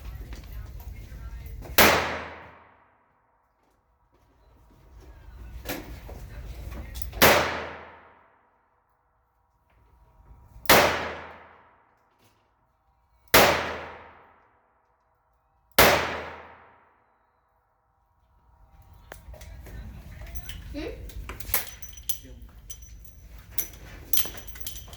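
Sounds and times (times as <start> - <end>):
revolver gunshots: 1.7 - 2.8, 7.1 - 8.2, 10.7 - 11.8, 13.3 - 14.4, 15.8 - 16.9.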